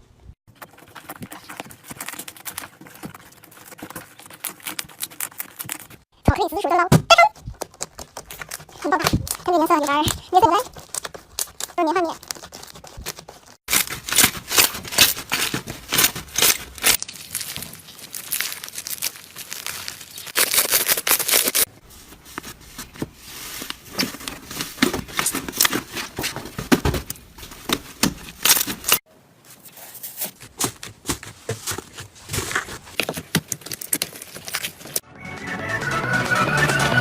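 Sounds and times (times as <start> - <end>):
slime crackling and popping: 13.7 - 21.7.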